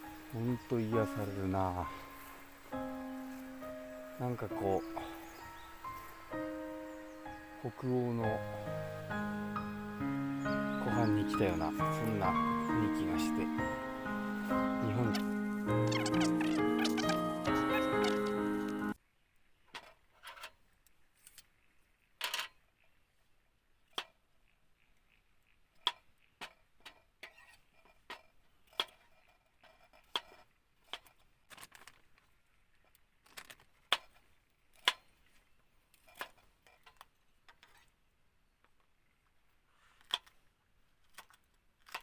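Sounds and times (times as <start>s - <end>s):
campfire crackling: 0.0s - 19.0s.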